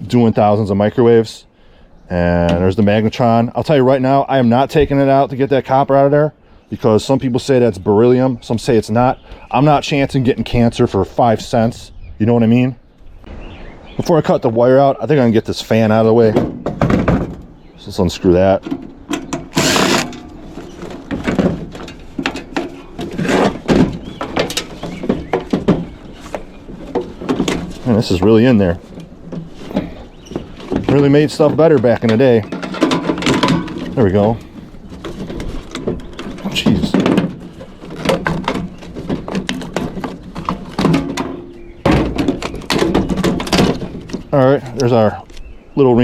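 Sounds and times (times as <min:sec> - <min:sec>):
metal clunks and scrapes: 0:18.4 - 0:45.3.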